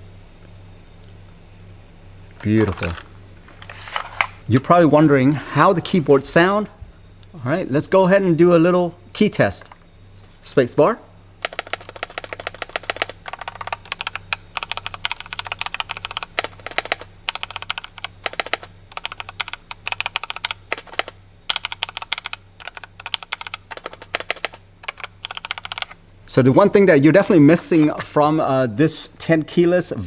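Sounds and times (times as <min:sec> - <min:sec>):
mechanical keyboard typing: 0:11.4 - 0:26.0.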